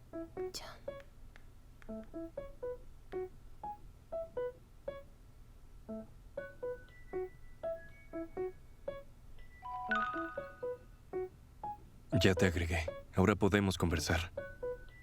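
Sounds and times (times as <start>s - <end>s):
keyboard melody: 5.9s - 13.2s, 13.9s - 15.0s.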